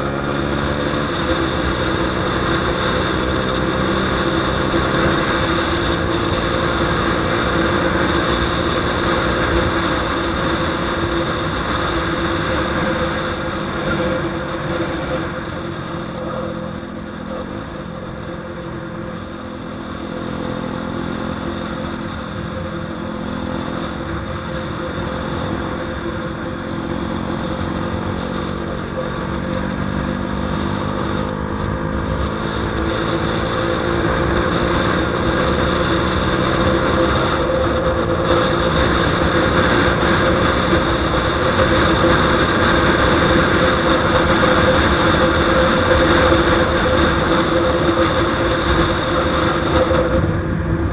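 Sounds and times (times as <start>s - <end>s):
motorcycle engine accelerating hard: 0.0s - 50.9s
wind noise on microphone: 27.8s - 50.9s.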